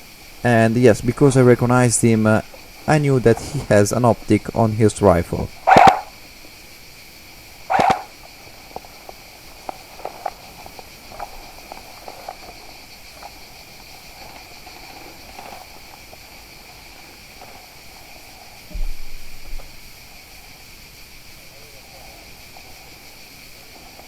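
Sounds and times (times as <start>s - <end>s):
insects chirring: 0.0s - 24.0s
footsteps in leafy undergrowth: 5.5s - 18.7s
thump on microphone: 18.7s - 19.7s.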